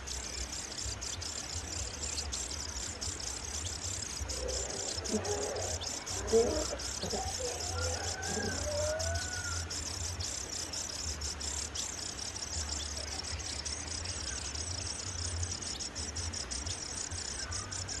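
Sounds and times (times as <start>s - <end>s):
high-pitched insect chorus: 0.0s - 18.0s.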